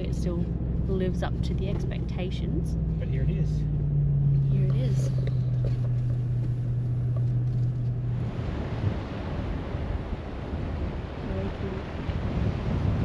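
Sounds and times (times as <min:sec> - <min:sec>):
vehicle interior drone: 0:00.0 - 0:13.0
wind buffeting microphone: 0:03.9 - 0:13.0
surf rushing: 0:08.0 - 0:13.0.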